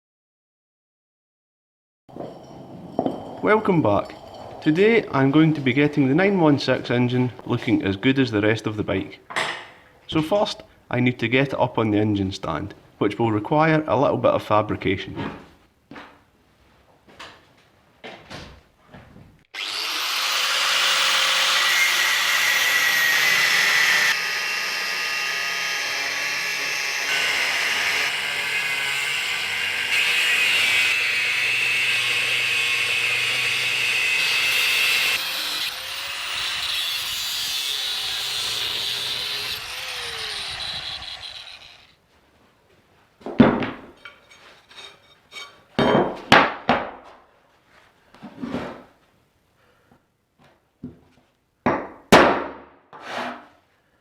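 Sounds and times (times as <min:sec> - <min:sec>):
metallic knocks: 0:02.1 - 0:04.8
power tool cutting metal: 0:19.6 - 0:41.9.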